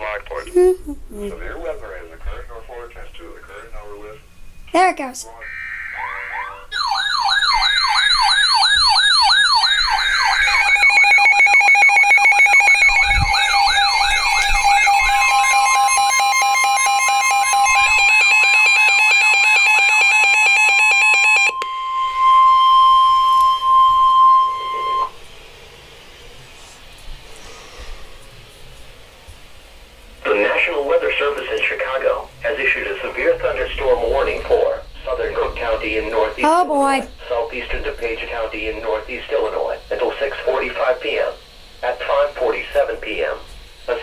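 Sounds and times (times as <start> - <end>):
electronic siren sweeping: 5.4 - 25.2
steady warning alarm tone: 5.4 - 26.7, 29.8 - 44.0.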